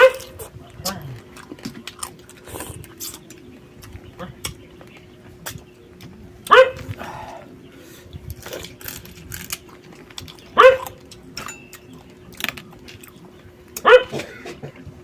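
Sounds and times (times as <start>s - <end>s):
dog barking: 0.0s - 0.4s, 6.5s - 6.9s, 10.6s - 11.0s, 13.8s - 14.3s
faint clicks and crunches: 0.2s - 6.2s, 8.2s - 14.8s.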